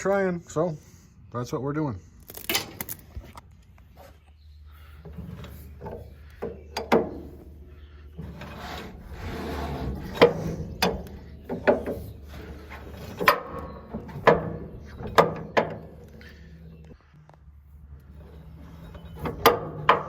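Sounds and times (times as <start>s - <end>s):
chain scraping and rubbing: 7.9s - 14.2s.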